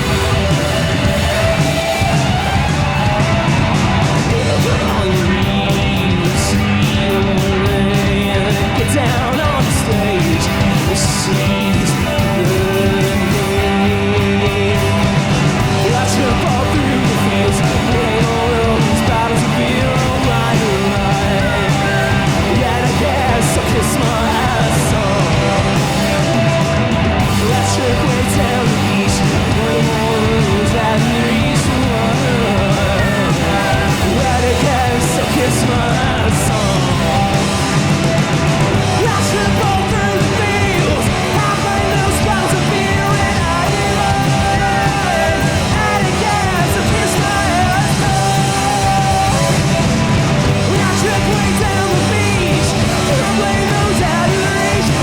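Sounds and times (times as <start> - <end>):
drums: 0.0 - 55.0
electric guitar: 0.0 - 55.0
person singing: 0.0 - 55.0.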